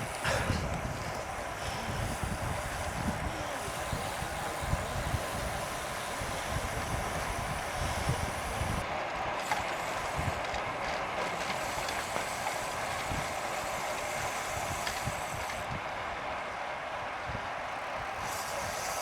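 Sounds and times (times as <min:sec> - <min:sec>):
wind noise: 0:00.0 - 0:08.9
bicycle hubs ratcheting: 0:00.0 - 0:15.7.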